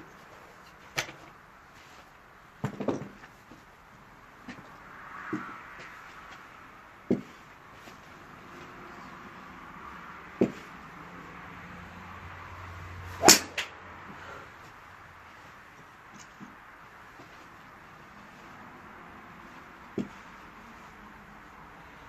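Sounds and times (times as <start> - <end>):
golf clubs striking balls: 2.6 - 3.7, 4.4 - 11.4, 12.9 - 14.8, 15.4 - 18.6, 19.2 - 21.0.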